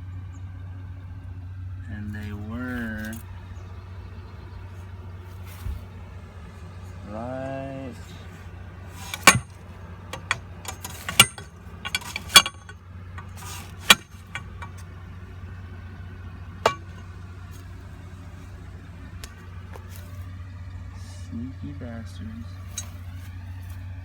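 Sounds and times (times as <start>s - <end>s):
steady low hum: 0.0s - 24.0s
sharp clicks and clinks: 9.0s - 14.8s, 16.6s - 17.0s.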